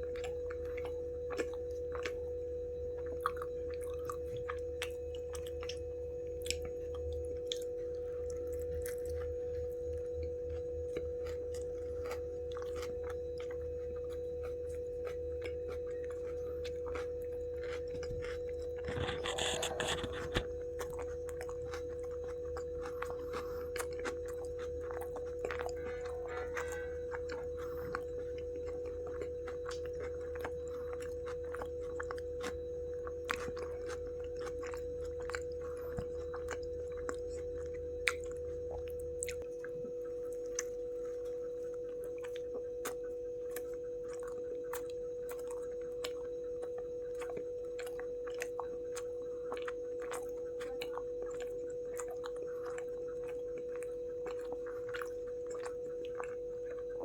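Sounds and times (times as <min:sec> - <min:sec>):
close chewing and biting: 0:00.0 - 0:57.0
steady hum: 0:00.0 - 0:57.0.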